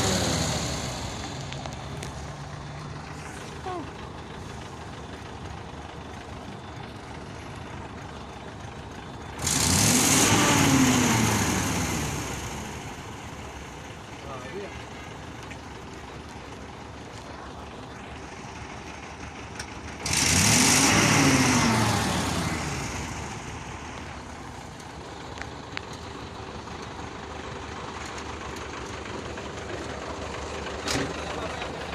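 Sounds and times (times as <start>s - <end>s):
truck engine running: 0.0s - 31.9s.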